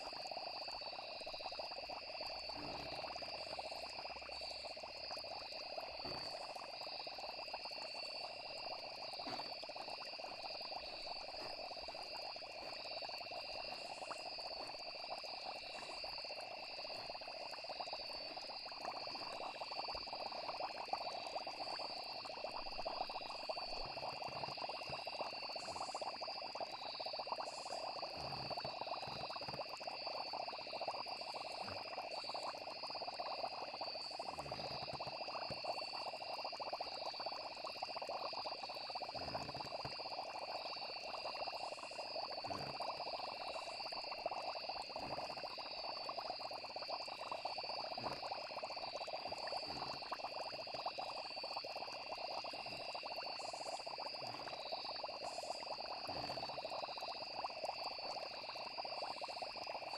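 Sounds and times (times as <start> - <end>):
frogs croaking: 0.0 - 59.9
insects chirring: 0.0 - 59.9
soft low thumps: 9.2 - 12.8.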